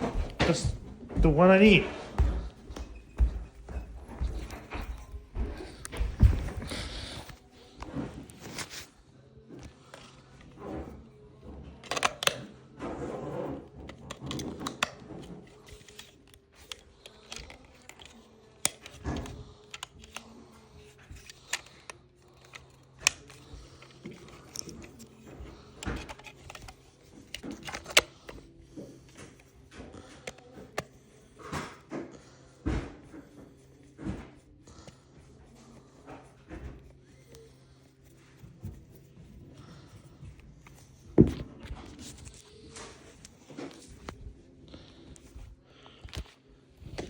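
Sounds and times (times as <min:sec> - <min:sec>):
plastic clicks and taps: 0:11.8 - 0:12.4.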